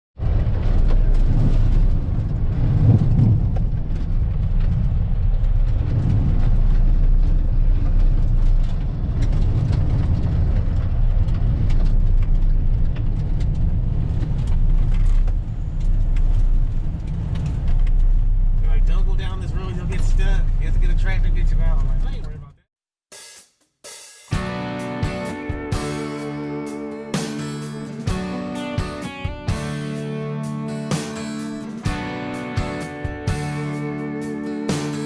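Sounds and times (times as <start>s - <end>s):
truck engine and road rumble: 0.2s - 22.6s, 24.3s - 35.0s.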